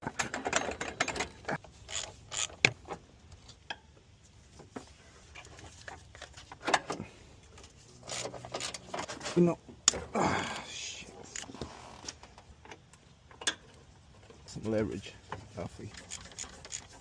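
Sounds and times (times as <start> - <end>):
ratchet clicking and rasping: 1.8 - 2.7, 15.8 - 17.0.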